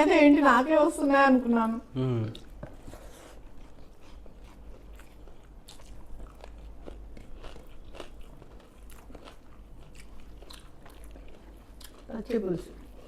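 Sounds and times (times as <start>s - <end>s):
chewing and crunching food: 2.2s - 13.0s.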